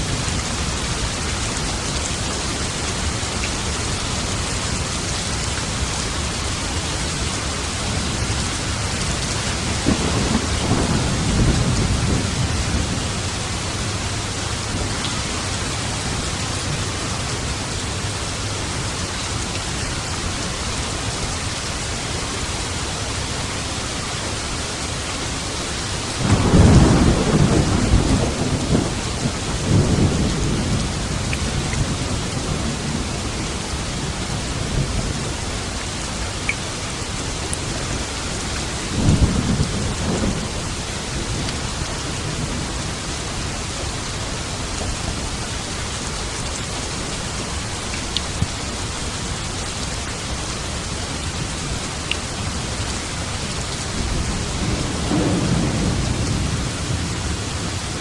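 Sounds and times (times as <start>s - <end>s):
heavy rain: 0.0s - 58.0s
rolling thunder: 9.0s - 16.9s, 26.2s - 35.4s, 38.8s - 43.0s, 53.6s - 58.0s.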